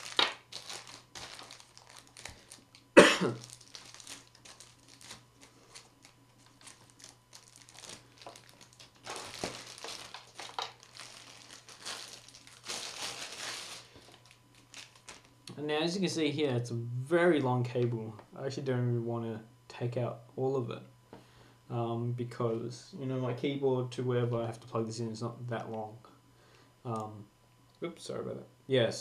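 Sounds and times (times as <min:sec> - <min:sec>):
packaging crinkling and rustling: 0:00.0 - 0:15.4
person coughing: 0:03.0 - 0:03.4.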